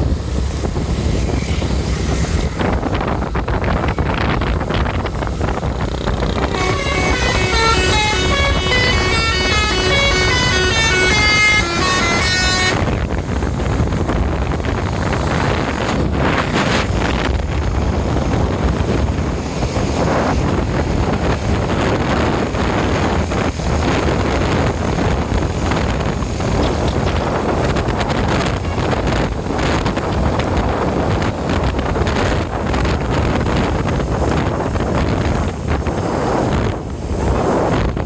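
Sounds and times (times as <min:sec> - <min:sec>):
wind and road noise: 0:00.0 - 0:38.0
bus horn playing tune: 0:06.4 - 0:13.2.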